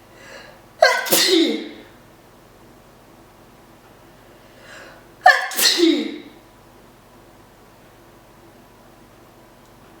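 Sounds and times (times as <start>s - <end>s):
faint breath in: 0.1s - 0.6s, 4.3s - 5.1s
woman sneezing: 0.8s - 2.0s, 5.2s - 6.4s.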